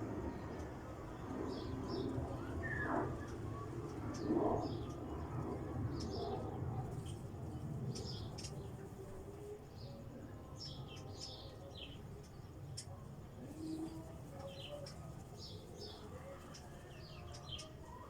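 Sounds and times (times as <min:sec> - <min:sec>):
small birds chirping: 0:05.9 - 0:09.1, 0:10.6 - 0:18.0.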